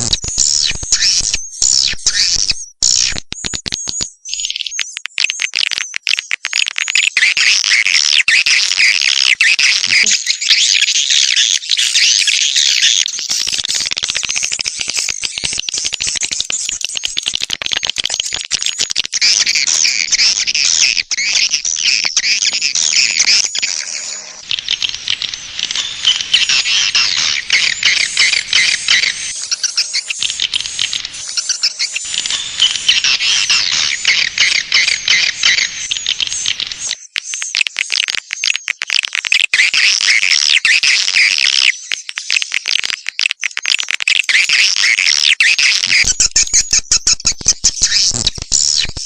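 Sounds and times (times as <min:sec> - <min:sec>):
swiftlets twittering: 0:13.0 - 0:37.2.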